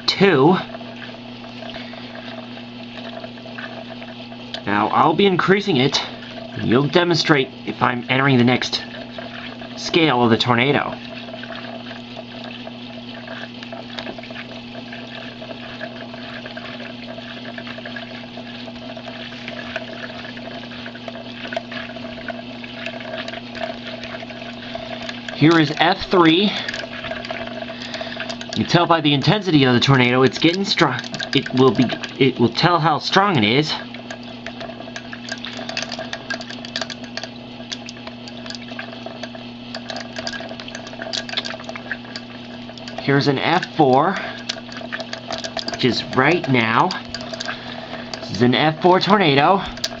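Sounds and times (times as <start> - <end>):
electric hum: 0.0 - 50.0
water splashing and bubbling: 0.0 - 50.0
irregular clicks and crackles: 0.7 - 4.7, 5.6 - 32.7, 33.6 - 50.0.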